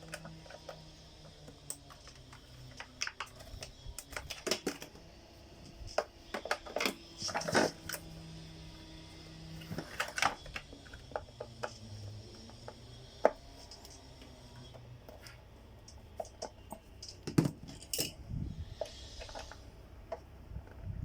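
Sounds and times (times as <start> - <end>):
plastic parts clicking: 0.0 - 5.0, 5.6 - 8.1, 9.6 - 18.2.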